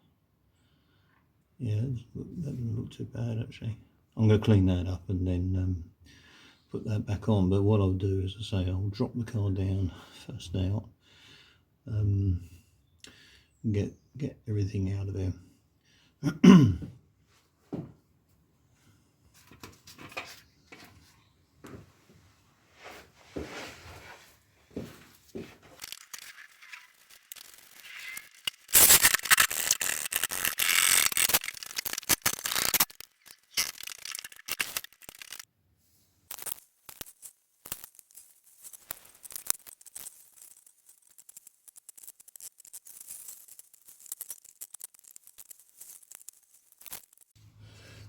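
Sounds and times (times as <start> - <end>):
clicks and rattles: 25.8 - 35.5, 36.3 - 47.4.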